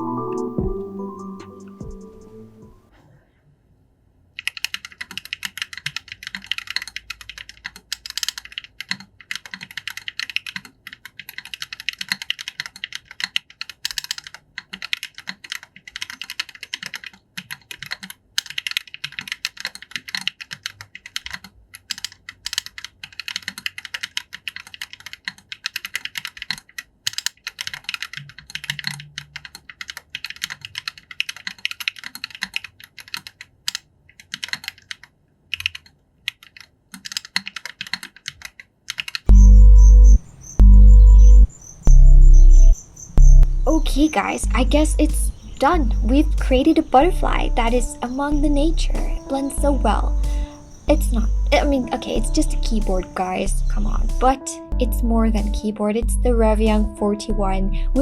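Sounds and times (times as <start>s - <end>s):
fast typing on mechanical keyboard: 4.4s - 39.3s, 52.9s - 53.5s.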